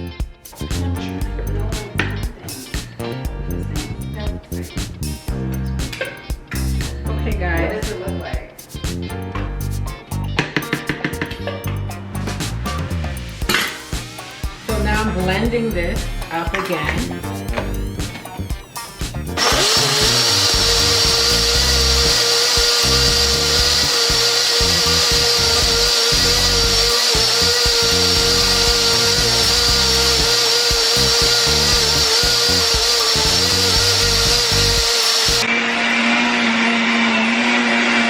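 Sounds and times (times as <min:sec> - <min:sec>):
blender motor running: 0:17.0 - 0:38.0.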